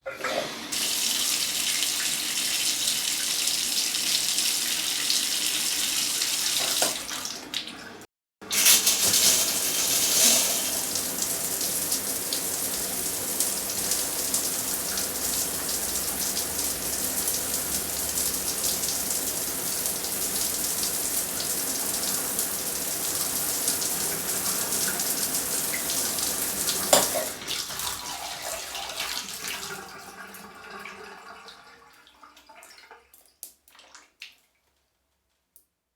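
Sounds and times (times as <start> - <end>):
shower spray hissing: 8.5 - 16.7.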